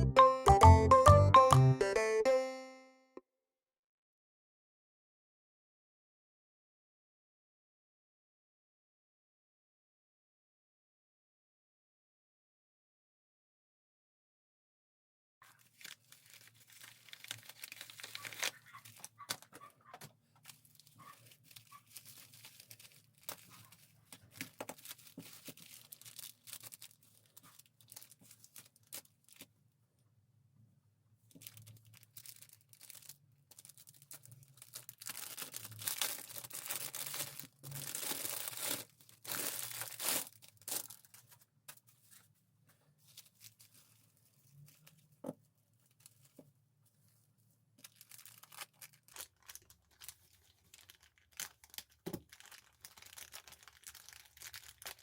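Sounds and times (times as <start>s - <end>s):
plastic or paper crinkling: 15.4s - 29.5s, 31.3s - 42.3s, 42.9s - 47.2s, 47.8s - 55.0s
tape tearing: 35.0s - 41.1s.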